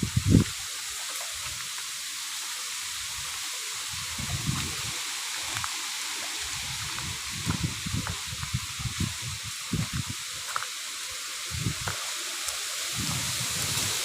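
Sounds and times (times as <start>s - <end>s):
wind buffeting microphone: 0.0s - 0.6s, 3.8s - 5.7s, 6.5s - 10.3s, 11.5s - 12.0s, 12.9s - 14.0s
wind rustling bamboo leaves: 0.0s - 14.0s.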